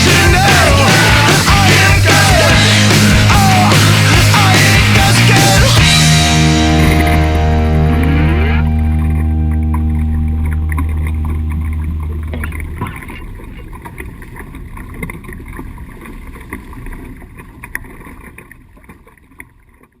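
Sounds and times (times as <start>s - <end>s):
rock music chord: 0.0s - 13.5s
water splashing: 6.4s - 19.9s
small knocks: 10.7s - 14.4s.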